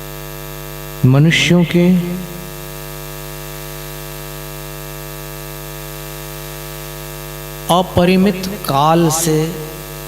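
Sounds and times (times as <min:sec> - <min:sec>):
electrical mains hum: 0:07.5 - 0:10.0.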